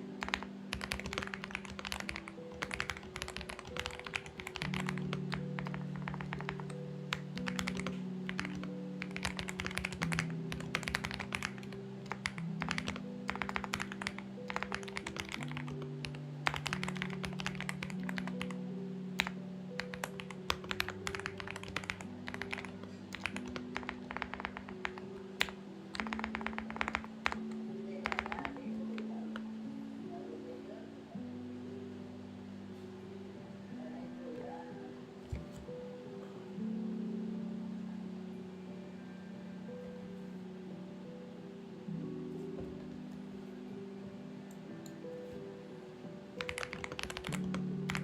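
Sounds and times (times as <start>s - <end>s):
soft background music chords: 0.0s - 48.0s
mechanical keyboard typing: 0.2s - 18.6s, 19.2s - 29.5s, 46.4s - 48.0s.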